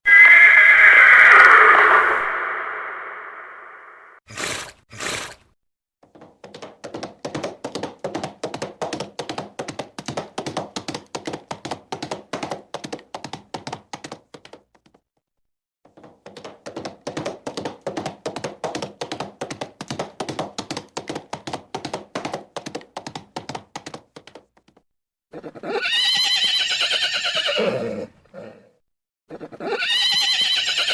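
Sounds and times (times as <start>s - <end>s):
horse hooves clip-clopping: 6.0s - 15.0s, 15.9s - 24.8s.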